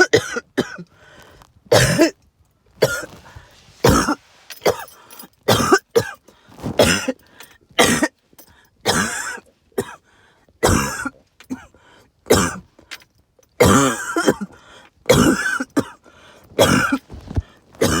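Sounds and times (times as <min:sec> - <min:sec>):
person coughing and clearing throat: 0:00.0 - 0:00.9, 0:01.7 - 0:02.2, 0:02.8 - 0:03.2, 0:03.8 - 0:07.2, 0:07.8 - 0:08.2, 0:08.9 - 0:10.0, 0:10.6 - 0:11.7, 0:12.3 - 0:12.7, 0:13.6 - 0:16.0, 0:16.6 - 0:18.0.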